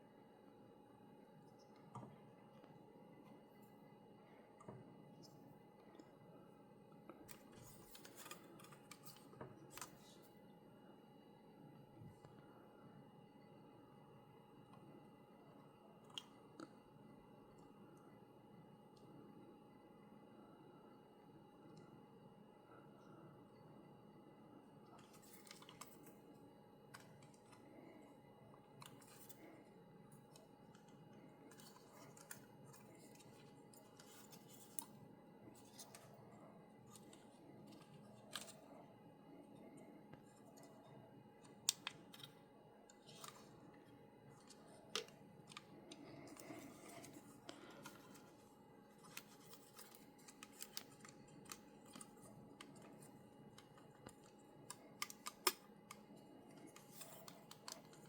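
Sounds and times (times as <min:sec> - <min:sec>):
faint steady hum: 0:00.0 - 0:58.0.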